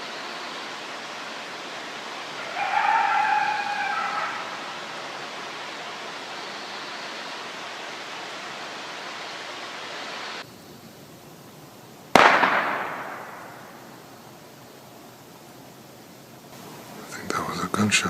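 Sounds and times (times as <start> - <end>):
steady hiss: 0.0 - 18.0
gunshot echoing: 12.1 - 13.9.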